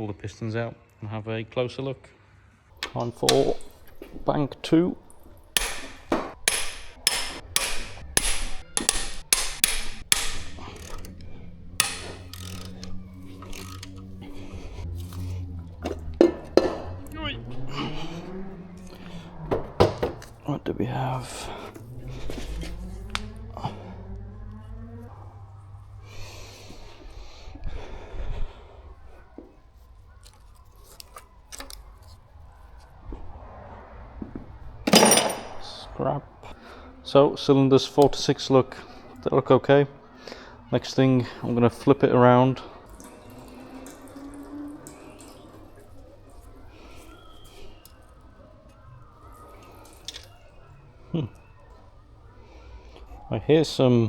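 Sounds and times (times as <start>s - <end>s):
metal tools knocking on engine: 2.8s - 14.8s, 34.9s - 35.6s.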